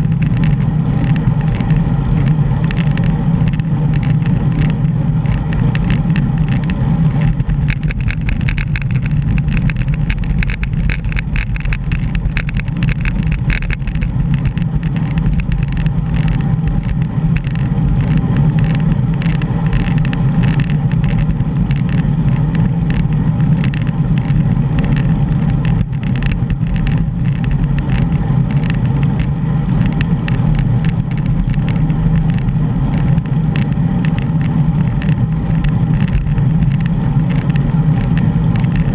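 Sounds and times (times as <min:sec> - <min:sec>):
bicycle clicks and rattles: 0:00.0 - 0:38.9
road rumble: 0:00.0 - 0:38.9
wind: 0:00.0 - 0:38.9.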